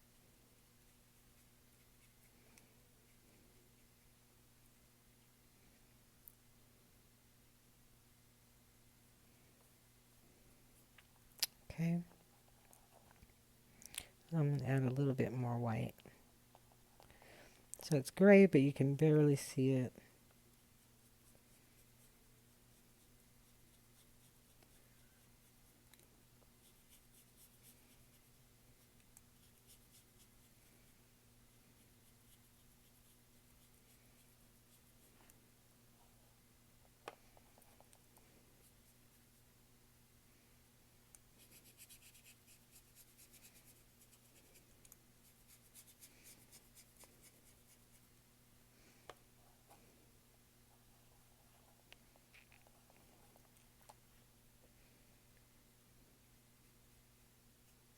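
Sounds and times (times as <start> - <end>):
low steady hum: 0.0 - 57.9
paintbrush scratching on canvas: 26.6 - 30.6, 31.6 - 35.3, 41.4 - 48.1.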